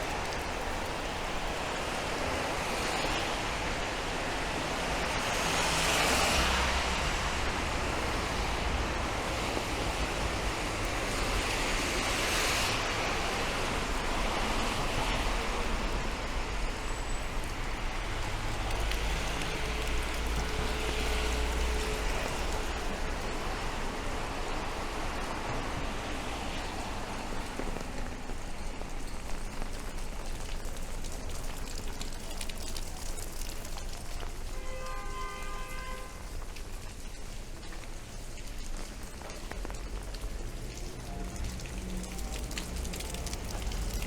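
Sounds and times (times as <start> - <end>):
car tyres hissing on wet road: 0.0 - 44.0
rain on street: 0.0 - 44.0.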